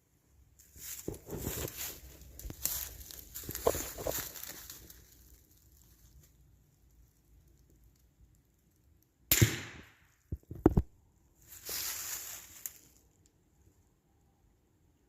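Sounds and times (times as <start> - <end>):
rifle shot crack: 9.3 - 10.1.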